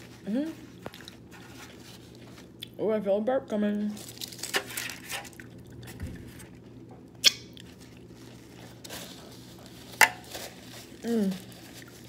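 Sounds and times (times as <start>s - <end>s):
faint steady hum: 0.0s - 12.0s
wet mouth smacks from eating: 7.2s - 7.7s.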